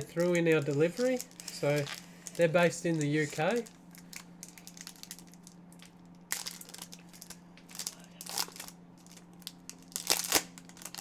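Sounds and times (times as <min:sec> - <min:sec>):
foil wrapper crinkling: 0:00.0 - 0:11.0
steady low hum: 0:00.0 - 0:11.0.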